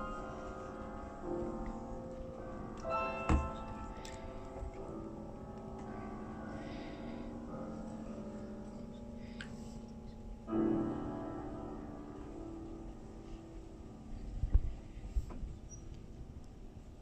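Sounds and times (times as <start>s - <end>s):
bells ringing: 0.0s - 7.0s.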